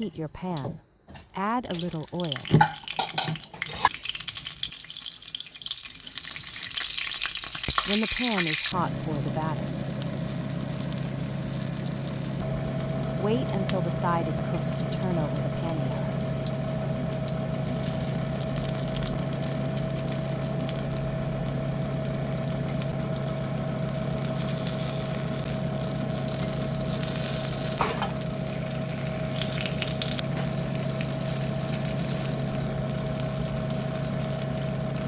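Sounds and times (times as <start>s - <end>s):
batter sizzling in hot oil: 1.9s - 35.0s
low hum: 8.7s - 35.0s.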